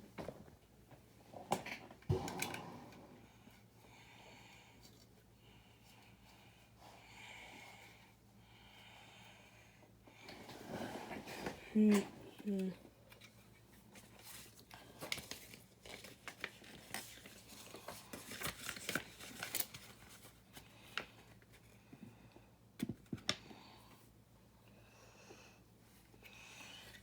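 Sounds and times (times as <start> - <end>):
plastic rustling: 13.8 - 21.0.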